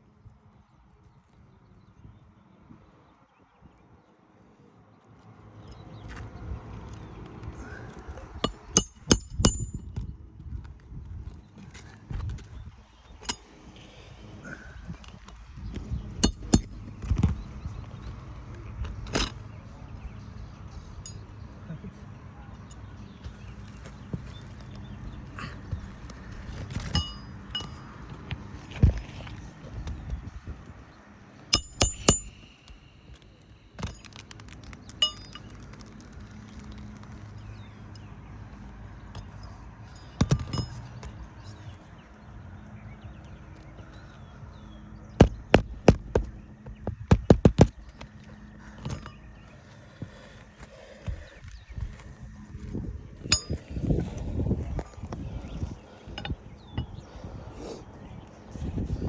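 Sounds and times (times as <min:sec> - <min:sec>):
metal clinks of hand tools: 0:08.4 - 0:09.9, 0:16.2 - 0:17.2, 0:26.7 - 0:28.1, 0:31.5 - 0:32.9, 0:33.8 - 0:35.9, 0:39.2 - 0:41.2, 0:53.2 - 0:54.1
hand tools knocking on shingles: 0:08.4 - 0:10.1, 0:16.2 - 0:17.4, 0:31.5 - 0:32.8, 0:40.0 - 0:41.2, 0:45.2 - 0:49.2.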